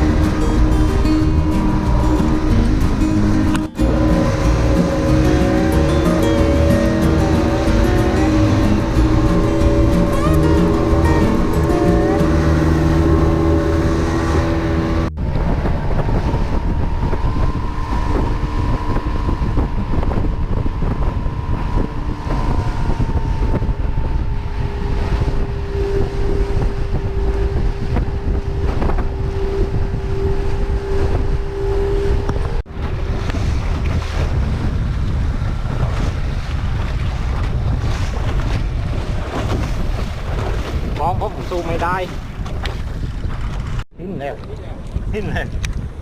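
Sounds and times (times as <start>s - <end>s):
steady whine: 0.0s - 33.8s
motorboat engine running: 0.0s - 43.9s
wind buffeting microphone: 0.0s - 46.0s.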